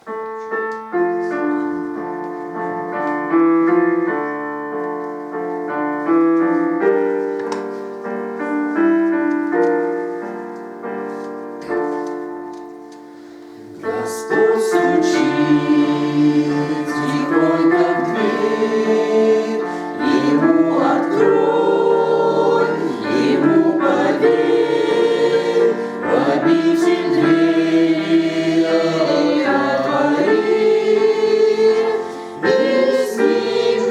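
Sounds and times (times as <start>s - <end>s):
piano chords: 0.0s - 33.9s
choir singing a hymn: 13.6s - 33.9s.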